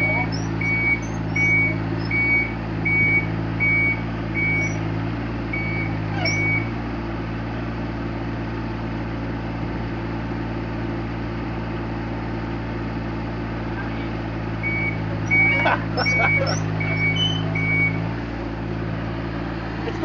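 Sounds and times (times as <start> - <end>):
travel alarm beeping: 0.0 - 4.8, 5.6 - 6.7, 14.6 - 18.1
excavator engine running: 0.0 - 20.0.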